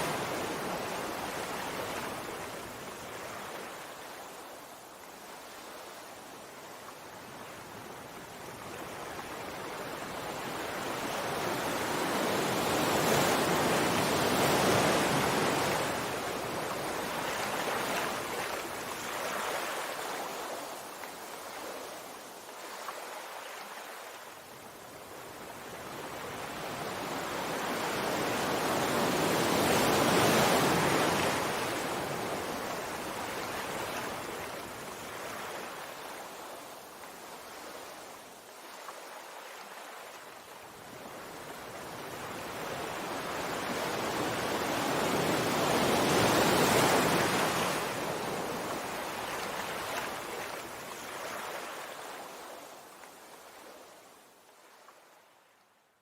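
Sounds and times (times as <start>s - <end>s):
sea waves washing on shore: 0.0s - 55.3s.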